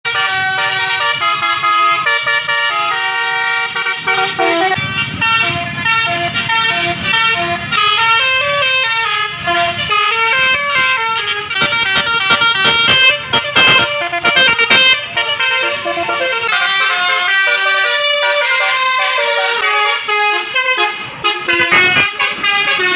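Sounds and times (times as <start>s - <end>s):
bus air horn melody: 0.1s - 22.9s.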